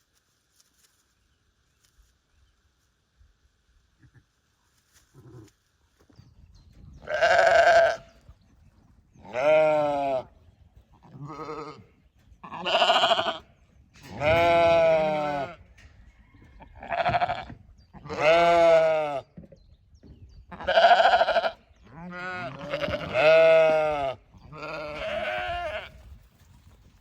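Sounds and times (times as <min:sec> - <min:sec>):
sheep bleating: 0:07.1 - 0:08.1, 0:09.2 - 0:10.3, 0:11.0 - 0:13.4, 0:14.1 - 0:15.6, 0:16.8 - 0:19.2, 0:20.6 - 0:26.0.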